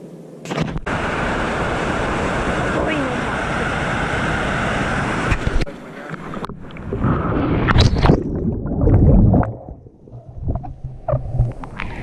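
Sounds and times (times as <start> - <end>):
river water splashing and gurgling: 0.5 - 12.0
low rumbling buffets on microphone: 6.5 - 12.0.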